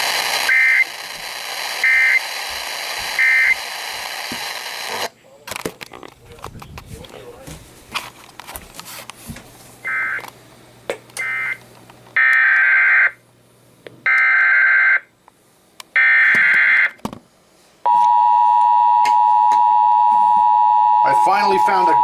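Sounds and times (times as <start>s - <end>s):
steady attention tone: 17.9s - 22.0s
warbling data bursts: 21.0s - 22.0s.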